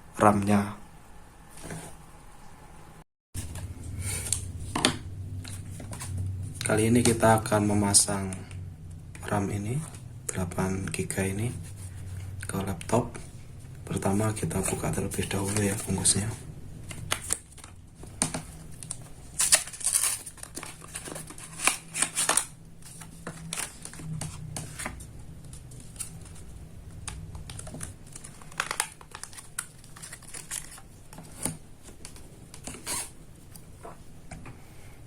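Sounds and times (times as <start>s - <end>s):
packaging crinkling and rustling: 14.2s - 33.6s.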